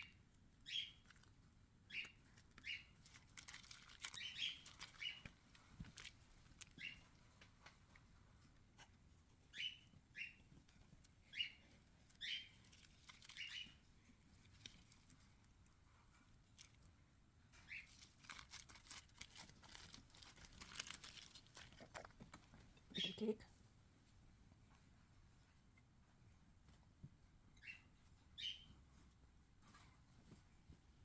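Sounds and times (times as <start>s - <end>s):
small bird chirping: 0.0s - 7.4s, 9.3s - 15.3s, 17.4s - 22.1s, 22.9s - 23.4s, 27.5s - 28.9s.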